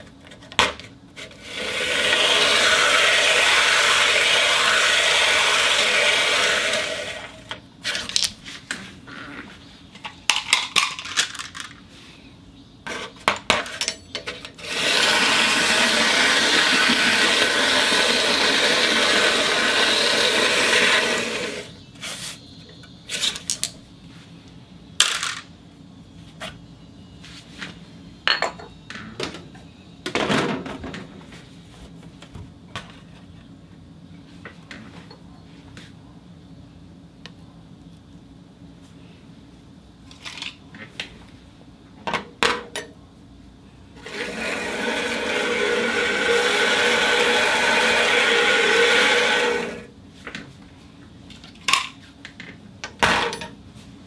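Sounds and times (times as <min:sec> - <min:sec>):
marbles rolling rush: 0:01.6 - 0:07.3, 0:14.6 - 0:21.7, 0:44.0 - 0:49.9.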